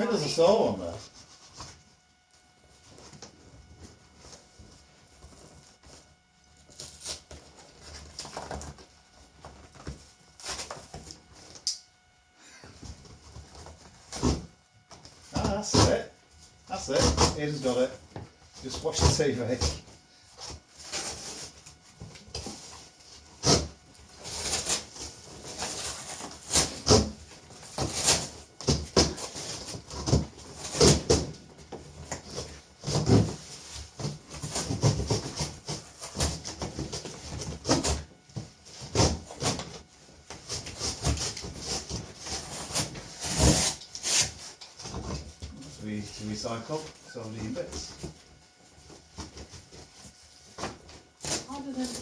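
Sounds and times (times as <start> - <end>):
cardboard packaging being handled: 0.0 - 11.6, 12.8 - 52.0.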